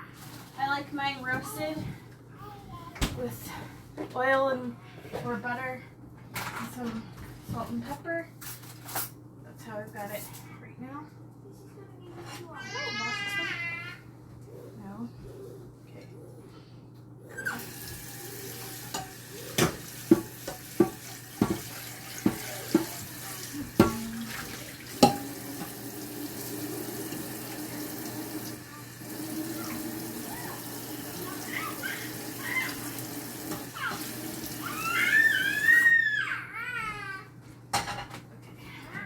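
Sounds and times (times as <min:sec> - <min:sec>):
sink tap running: 0:17.5 - 0:35.8
dishes clinking: 0:18.6 - 0:26.0, 0:37.7 - 0:38.2.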